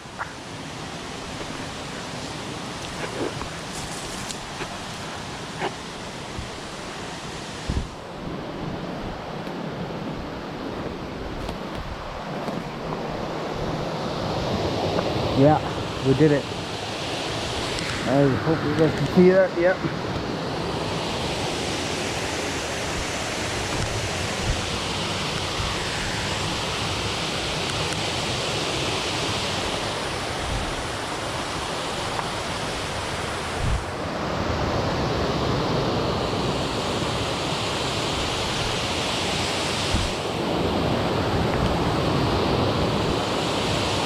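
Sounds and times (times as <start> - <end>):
water rushing over spillway: 12.2 - 44.0.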